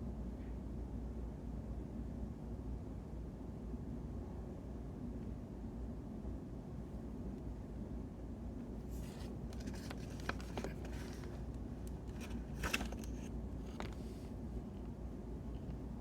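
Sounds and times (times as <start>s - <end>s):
paper rustling and clicks: 9.0s - 14.3s.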